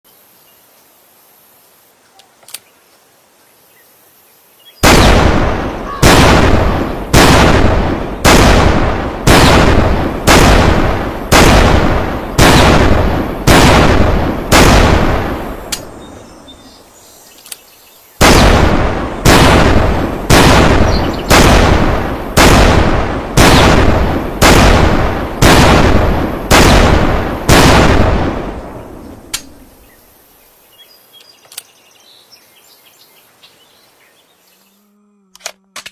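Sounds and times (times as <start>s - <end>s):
faint clicks: 2.1s - 2.8s, 15.7s - 15.9s, 17.4s - 17.7s, 29.3s - 29.6s, 31.2s - 31.8s
rifle shots with rolling echo: 4.8s - 16.3s, 18.2s - 29.8s.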